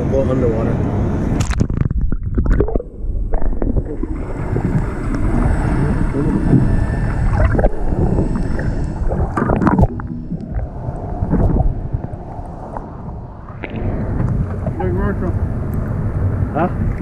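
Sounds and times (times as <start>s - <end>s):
boat engine low rumble: 0.0s - 17.0s
wind buffeting microphone: 0.0s - 17.0s.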